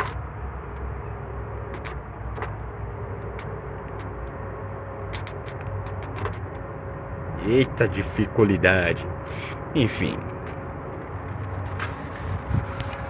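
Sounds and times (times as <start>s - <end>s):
electric fuel pump humming: 0.0s - 13.0s.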